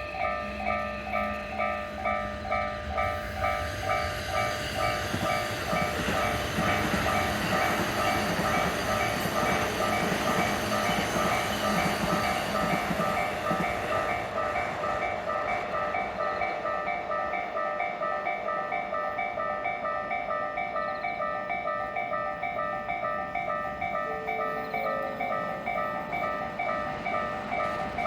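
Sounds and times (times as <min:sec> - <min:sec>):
train rumble and wheel noise: 0:00.0 - 0:28.0
level crossing bell dinging: 0:17.2 - 0:28.0.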